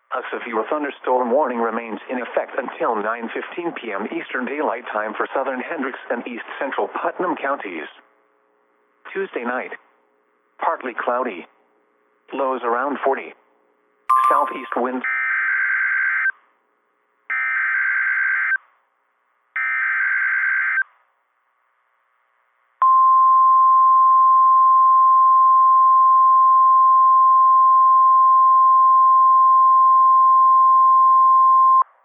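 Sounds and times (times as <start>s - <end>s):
steady warning alarm tone: 14.1s - 15.3s.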